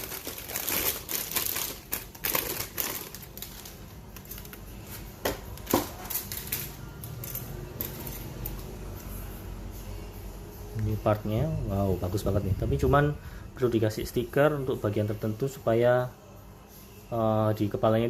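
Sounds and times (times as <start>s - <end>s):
plastic packaging crinkling: 0.0s - 6.8s.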